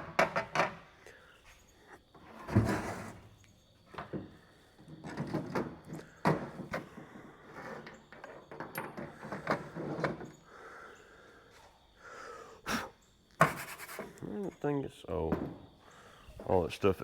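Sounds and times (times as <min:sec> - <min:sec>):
tools knocking and scraping: 0:00.0 - 0:00.8.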